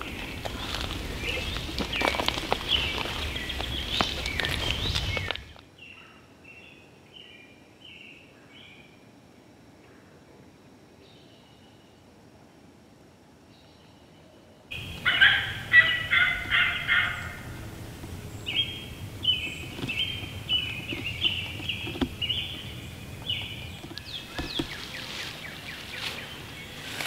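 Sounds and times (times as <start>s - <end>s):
turkey calls: 14.7s - 27.0s.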